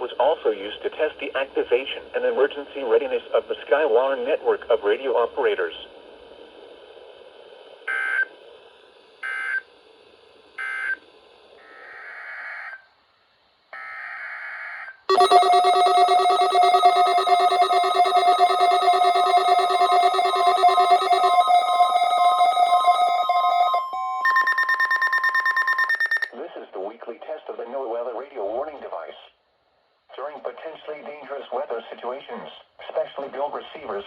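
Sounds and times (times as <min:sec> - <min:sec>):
multi-tone alarm: 0:13.8 - 0:26.3
electronic data bursts: 0:15.1 - 0:26.3
pulsing high beep: 0:15.1 - 0:26.3.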